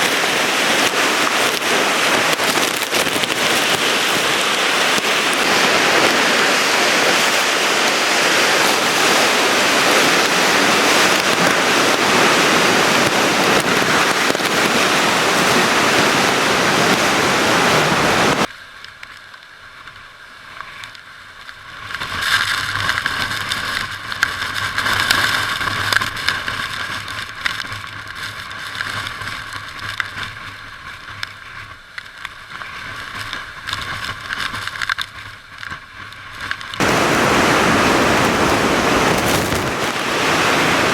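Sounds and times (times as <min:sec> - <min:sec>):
wind and rain roaring: 0:00.0 - 0:18.5, 0:36.0 - 0:40.9
steady high hiss: 0:36.8 - 0:40.9.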